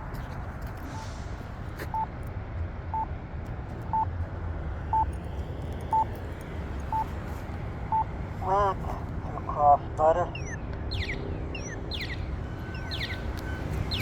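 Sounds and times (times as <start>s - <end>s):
low traffic rumble: 0.0s - 14.0s
pedestrian signal beeps: 0.8s - 1.2s, 1.9s - 2.1s, 2.9s - 3.1s, 3.9s - 4.2s, 4.9s - 5.1s, 5.9s - 6.1s, 6.9s - 7.1s, 7.9s - 8.6s, 10.1s - 14.0s.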